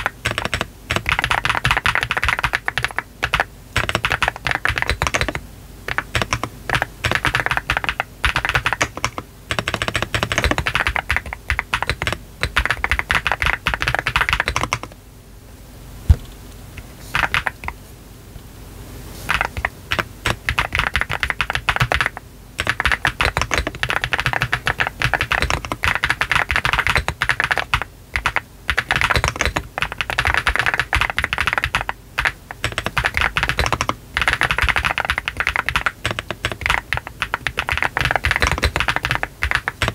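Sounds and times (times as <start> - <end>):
mechanical keyboard typing: 0.0 - 15.0, 17.1 - 17.8, 19.3 - 39.9.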